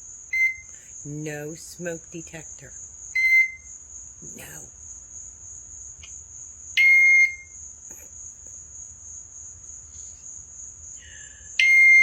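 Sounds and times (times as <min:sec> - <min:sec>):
bird imitating smoke alarm beep: 0:00.3 - 0:00.7, 0:03.2 - 0:03.7, 0:06.8 - 0:07.6, 0:11.6 - 0:12.0.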